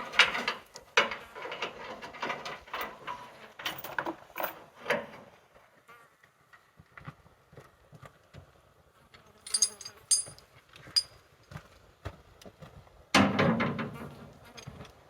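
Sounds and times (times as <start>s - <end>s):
sharp metallic clinks: 9.5s - 11.1s.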